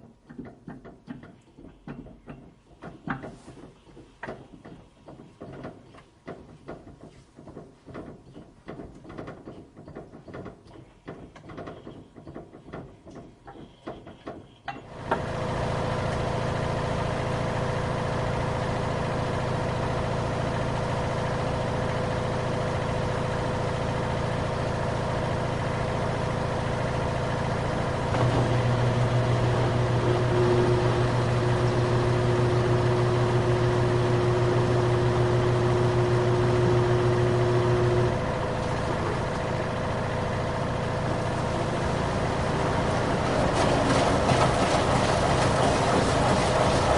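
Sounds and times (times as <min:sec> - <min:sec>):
washing machine clicks and knocks: 0:00.0 - 0:15.3
washing machine motor hum: 0:00.0 - 0:46.9.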